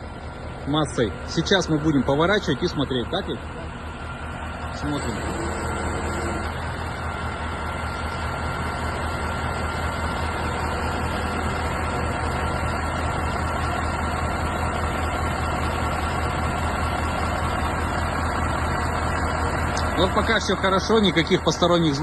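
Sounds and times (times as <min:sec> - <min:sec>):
engine low hum: 0:00.0 - 0:22.0
faint hydraulic whine: 0:00.3 - 0:12.5.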